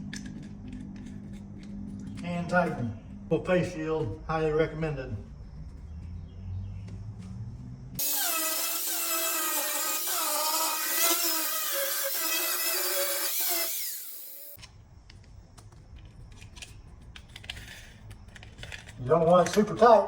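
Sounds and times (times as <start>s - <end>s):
angle grinder high whine: 8.0s - 14.6s.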